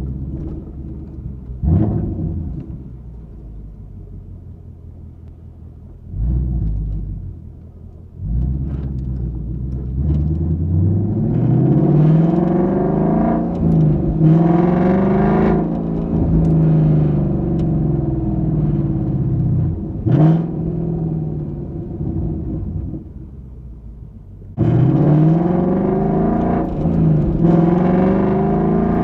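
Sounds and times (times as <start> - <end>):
car engine exhaust revving: 0.0 - 3.0, 6.0 - 23.4, 24.5 - 29.0.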